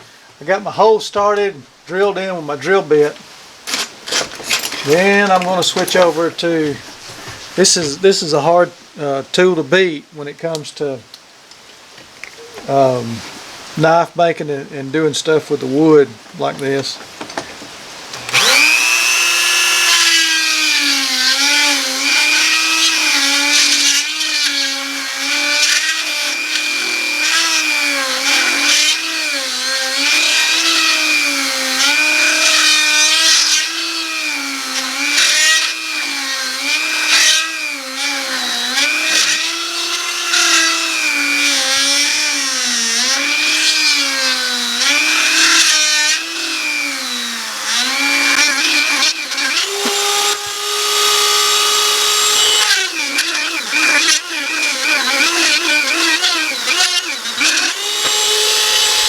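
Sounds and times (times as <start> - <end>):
power tool cutting wood: 18.2 - 59.0.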